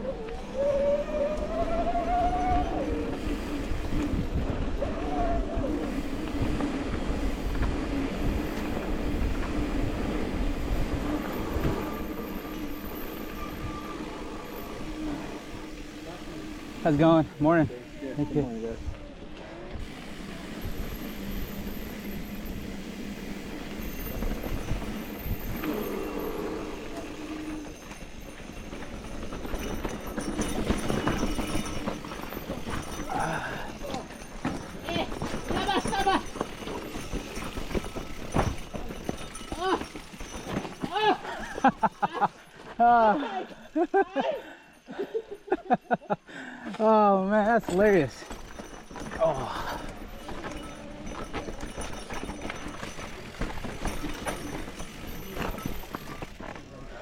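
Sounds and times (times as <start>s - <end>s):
wind buffeting microphone: 1.0s - 12.5s
bike frame rattling: 27.7s - 42.4s, 47.4s - 56.8s.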